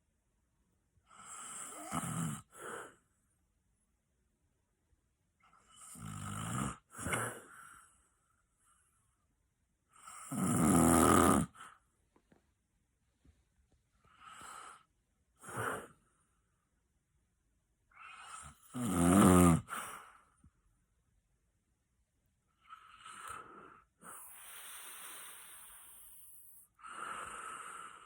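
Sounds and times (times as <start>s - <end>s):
person snoring loudly: 1.2s - 2.7s, 5.9s - 7.5s, 10.2s - 11.6s, 18.0s - 19.9s.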